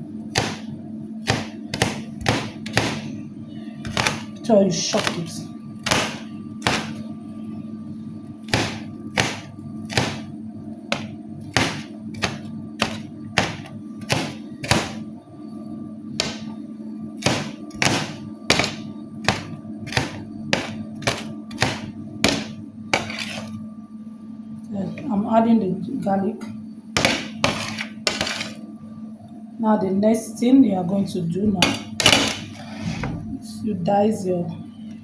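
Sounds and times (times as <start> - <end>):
knife chopping on cutting board: 0.4 - 3.1, 3.9 - 4.4, 5.9 - 7.0, 8.5 - 10.3, 10.9 - 15.0, 16.2 - 16.5, 17.2 - 23.5, 27.0 - 28.6.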